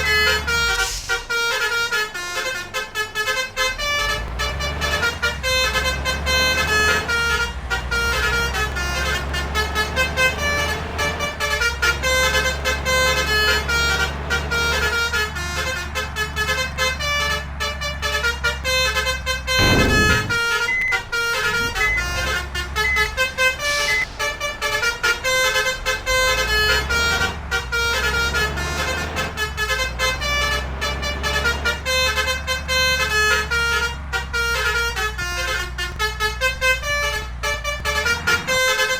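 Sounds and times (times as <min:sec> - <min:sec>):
bus engine rumble: 0:00.0 - 0:38.9
multi-tone bus horn melody: 0:00.0 - 0:38.9
deep whoosh: 0:19.6 - 0:20.5.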